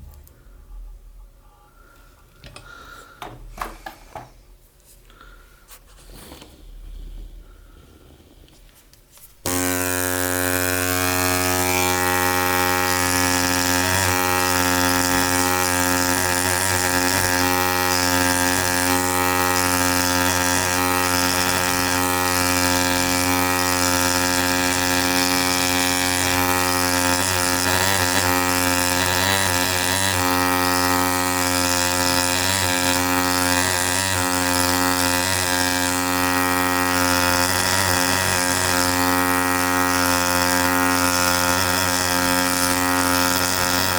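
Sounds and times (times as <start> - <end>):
pneumatic air scribe buzzing: 9.2 - 43.9.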